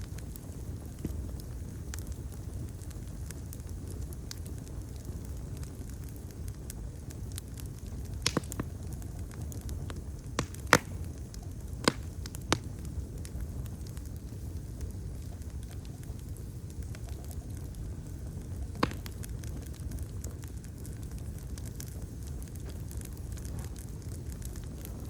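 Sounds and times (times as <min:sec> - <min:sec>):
sharp pops of fire: 0:00.0 - 0:25.0
wood fire crackling: 0:00.0 - 0:25.0.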